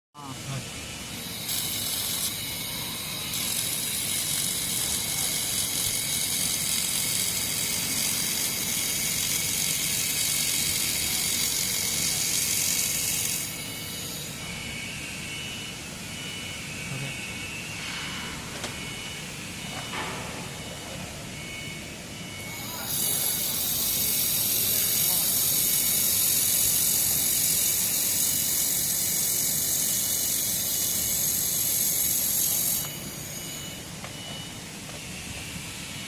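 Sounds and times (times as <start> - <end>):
faint high whine: 0.2 - 36.0
welding arc hissing: 1.0 - 14.4, 22.4 - 33.9.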